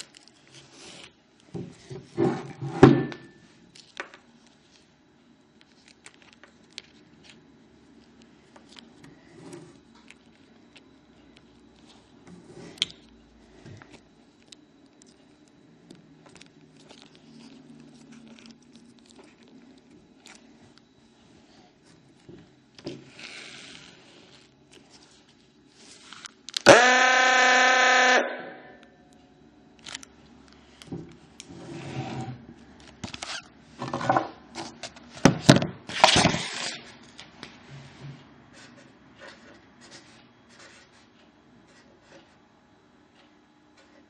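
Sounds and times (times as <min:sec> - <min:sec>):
buzzy electric horn blast: 0:26.6 - 0:28.8.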